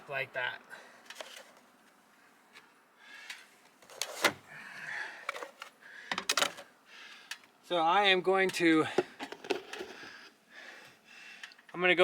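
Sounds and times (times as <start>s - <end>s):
plastic scraping: 3.8s - 4.4s.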